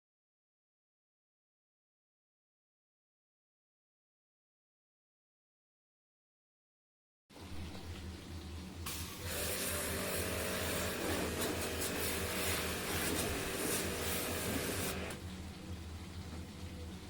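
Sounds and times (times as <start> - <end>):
water jet spraying: 8.9 - 15.2.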